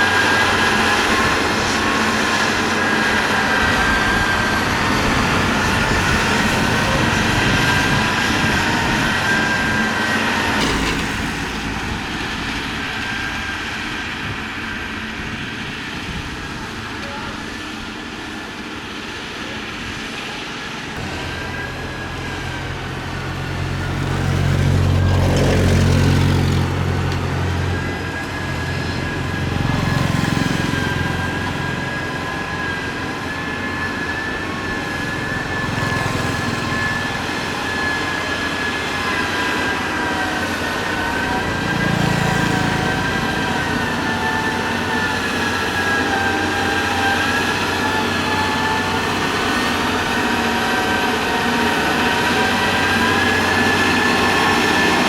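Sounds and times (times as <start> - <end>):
thin steady whine: 0.0 - 24.8
diesel engine working under load: 0.0 - 55.0.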